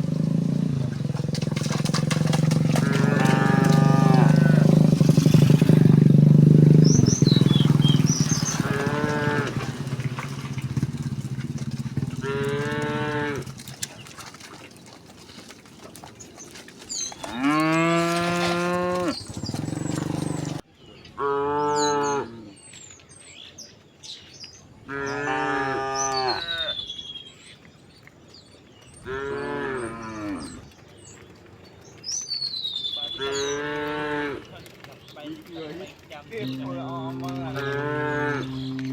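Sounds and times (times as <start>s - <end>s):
cows mooing: 0.0s - 14.6s, 17.1s - 20.6s, 21.2s - 22.6s, 24.9s - 26.8s, 29.0s - 30.7s, 33.1s - 34.7s, 35.6s - 38.9s
small birds chirping: 0.0s - 25.3s, 26.1s - 38.9s.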